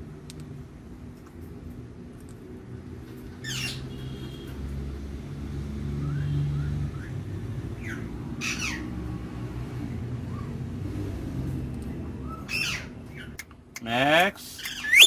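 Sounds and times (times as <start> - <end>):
parrot squawking: 3.4 - 4.1, 7.8 - 9.0, 12.2 - 13.4, 14.6 - 15.0.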